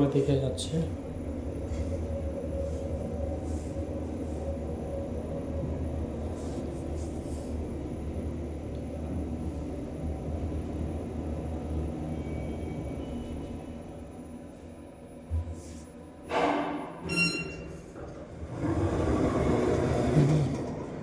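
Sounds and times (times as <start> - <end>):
lift hum and rumble: 0.0 - 21.0.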